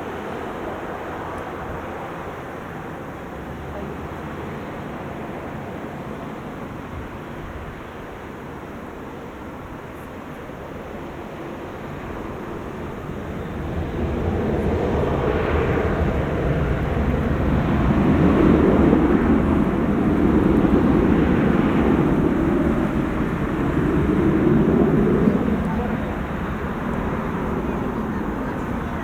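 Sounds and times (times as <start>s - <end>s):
jet engines rushing: 11.1s - 29.0s.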